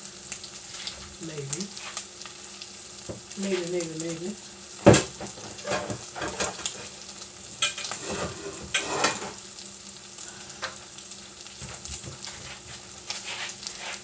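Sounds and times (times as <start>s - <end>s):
food sizzling in a frying pan: 0.0s - 14.0s
utensil scraping and clinking in pan: 4.9s - 9.5s, 11.6s - 14.0s.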